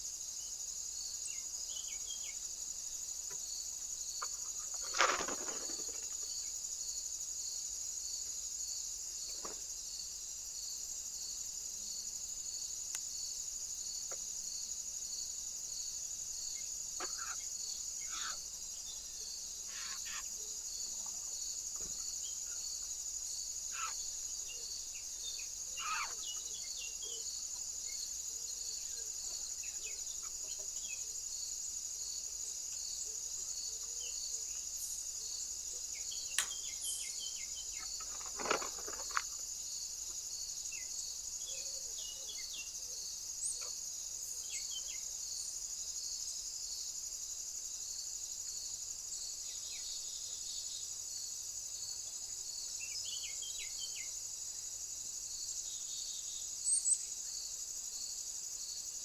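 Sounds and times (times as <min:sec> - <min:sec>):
insects buzzing and trilling: 0:00.0 - 0:59.0
bird chirps: 0:17.0 - 0:18.4, 0:23.7 - 0:24.7, 0:25.3 - 0:27.2.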